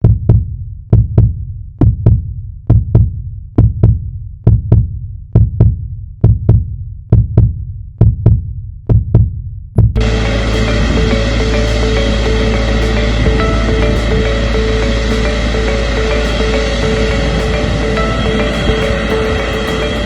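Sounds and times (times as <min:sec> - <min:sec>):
deep heartbeat double thump: 0:00.0 - 0:10.0.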